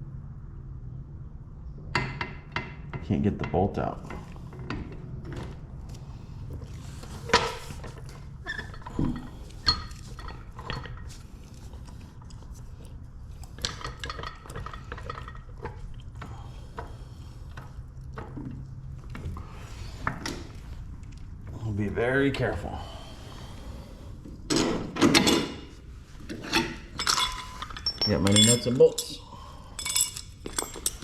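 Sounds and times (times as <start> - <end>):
steady low hum: 0.0 - 31.0
metal tools clinking: 26.4 - 31.0.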